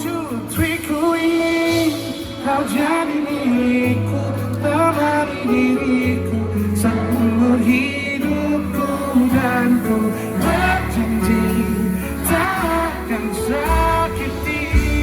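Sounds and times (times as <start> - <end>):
people singing pop ballad: 0.0 - 15.0
strummed acoustic guitar: 0.0 - 15.0
steady bass: 6.3 - 15.0.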